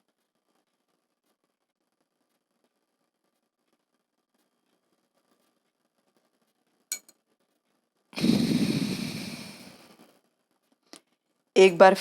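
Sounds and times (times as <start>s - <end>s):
breath blown out through nose: 8.2s - 10.0s.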